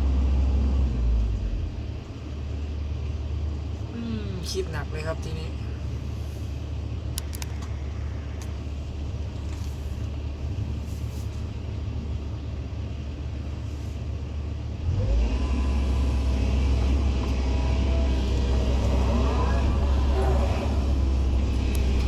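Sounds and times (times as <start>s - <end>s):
excavator diesel engine rumbling: 0.0s - 22.0s
hydraulic whining: 14.8s - 22.0s.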